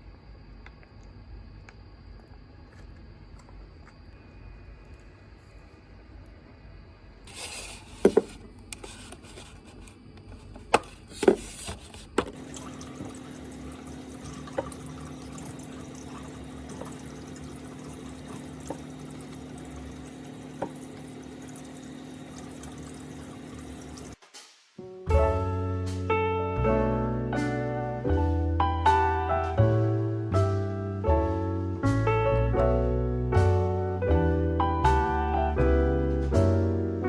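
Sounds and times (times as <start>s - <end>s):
water running steadily: 12.3s - 24.2s.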